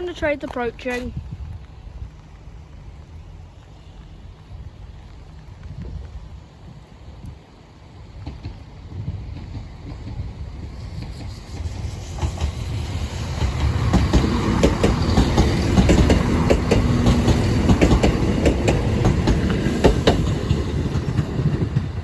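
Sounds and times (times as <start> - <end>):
train rumble: 0.0 - 22.0
train wheels clicking over rail joints: 7.9 - 22.0.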